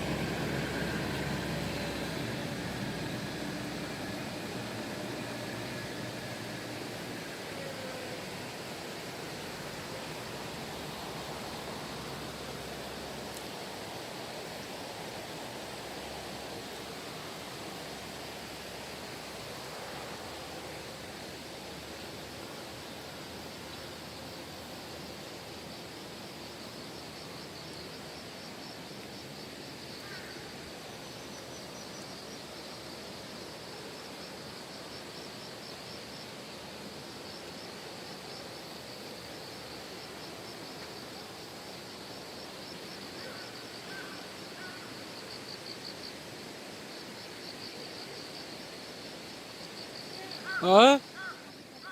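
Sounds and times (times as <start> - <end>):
stream flowing over rocks: 0.0 - 29.7.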